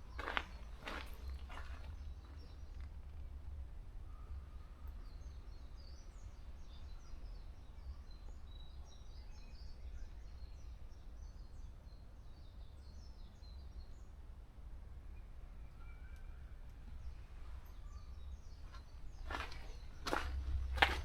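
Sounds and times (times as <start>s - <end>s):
songbirds twittering: 0.0s - 14.2s, 15.1s - 21.0s
steady low rumble: 17.2s - 21.0s.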